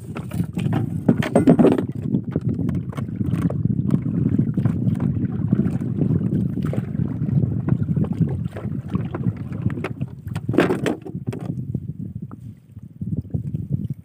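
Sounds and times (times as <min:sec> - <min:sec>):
boat engine rumble: 0:00.0 - 0:14.0
wind buffeting microphone: 0:00.0 - 0:14.0.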